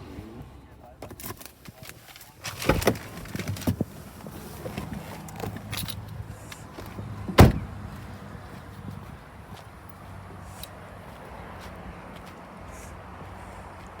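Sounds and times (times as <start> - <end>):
loud thump: 7.4 - 7.7.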